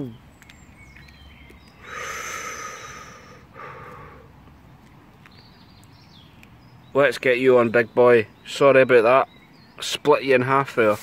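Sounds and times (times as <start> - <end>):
person exhaling through mouth: 1.8 - 4.3.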